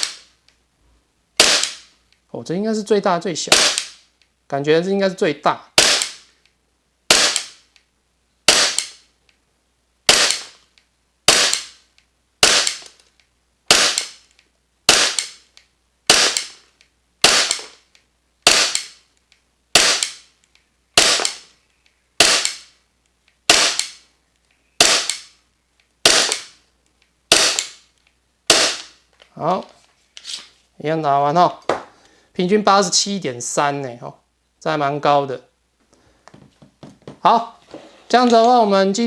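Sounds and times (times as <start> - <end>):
airsoft pistol shots: 0.0 - 0.3, 1.4 - 1.9, 3.5 - 4.0, 5.8 - 6.3, 7.1 - 7.6, 8.5 - 9.0, 10.1 - 10.6, 11.3 - 11.8, 12.4 - 12.9, 13.7 - 14.2, 14.9 - 15.4, 16.1 - 16.6, 17.2 - 17.8, 18.4 - 19.0, 19.7 - 20.2, 21.0 - 21.5, 22.2 - 22.7, 23.5 - 24.0, 24.8 - 25.3, 26.0 - 26.6, 27.3 - 27.8, 28.5 - 29.0.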